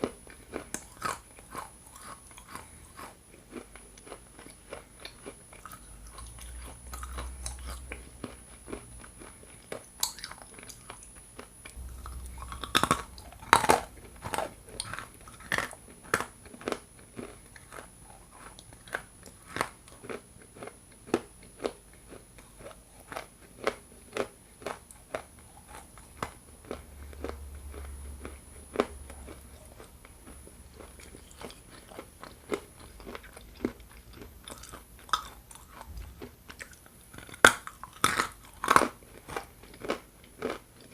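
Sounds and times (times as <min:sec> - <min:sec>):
crunchy chewing of clay: 0:00.0 - 0:40.9.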